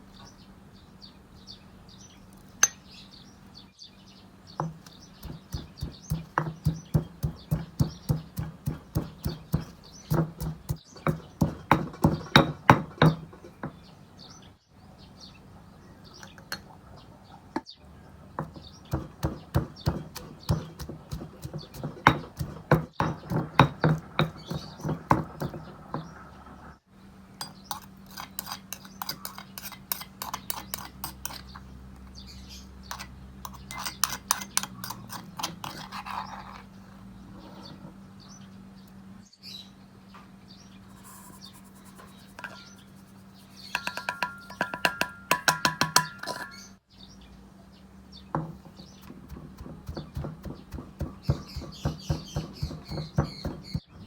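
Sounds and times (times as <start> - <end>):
knife chopping on cutting board: 4.6 - 13.2, 18.4 - 25.6, 48.4 - 53.9.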